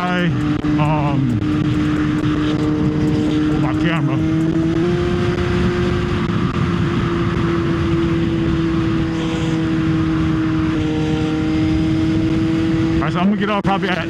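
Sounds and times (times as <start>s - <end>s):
wind noise on microphone: 0.0s - 13.1s
motorcycle engine running: 0.0s - 14.0s.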